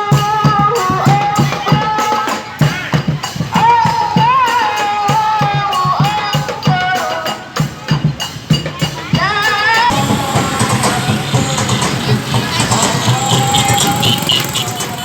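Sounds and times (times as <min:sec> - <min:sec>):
steady drum beat: 0:00.0 - 0:15.0
wavering sung melody: 0:09.2 - 0:15.0
rough noisy sound: 0:09.9 - 0:15.0.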